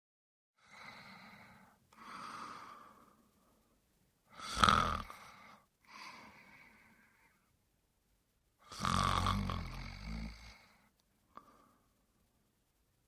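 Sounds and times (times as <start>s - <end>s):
man snoring: 4.3s - 5.3s, 8.6s - 10.7s.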